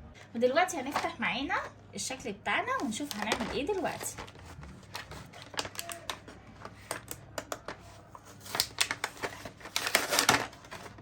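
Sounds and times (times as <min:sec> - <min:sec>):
plastic packaging crinkling: 0:02.8 - 0:11.0.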